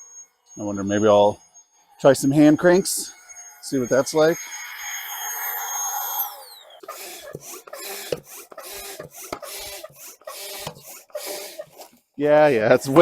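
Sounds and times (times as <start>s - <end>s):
electric air pump whining: 0.0s - 13.0s
hand pump strokes: 3.6s - 13.0s.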